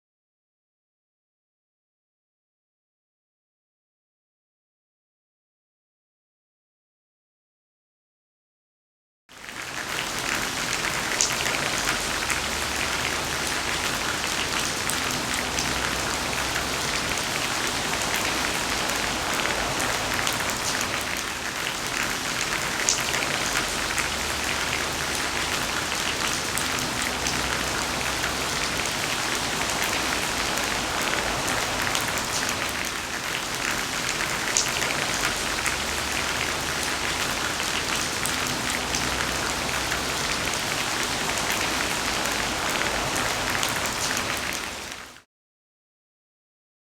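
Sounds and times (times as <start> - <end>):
steady rain falling: 9.3 - 45.3.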